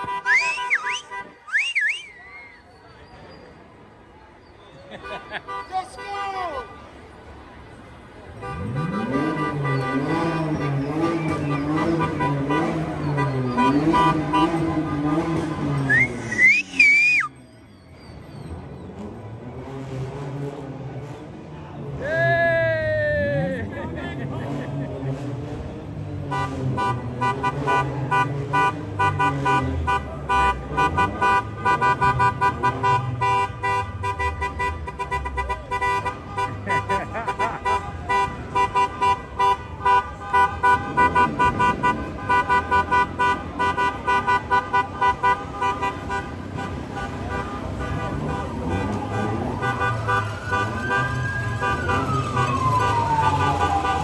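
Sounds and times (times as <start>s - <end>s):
car horns honking: 0.0s - 2.1s, 5.0s - 7.0s, 8.2s - 17.3s, 26.2s - 54.0s
car engines rumbling: 0.0s - 54.0s.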